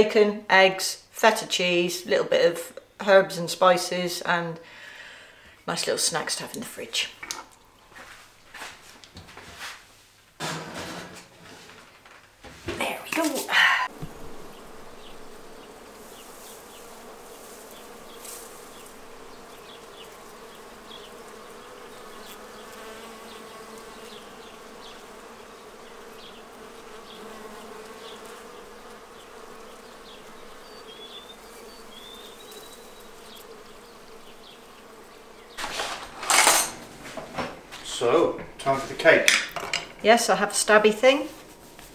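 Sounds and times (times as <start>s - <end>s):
steady buzzing hum: 13.8s - 39.2s.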